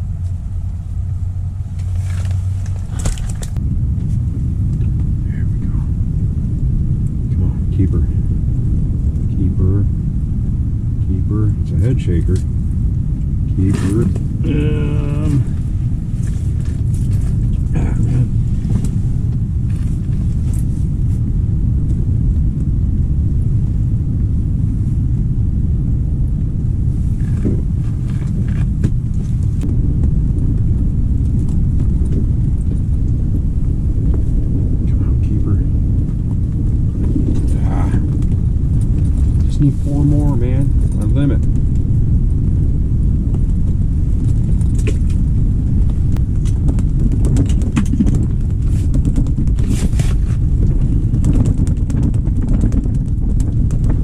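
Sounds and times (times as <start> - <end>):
wind buffeting microphone: 0.0 - 54.0
handling clicks and scrapes: 1.7 - 3.6, 46.4 - 53.0.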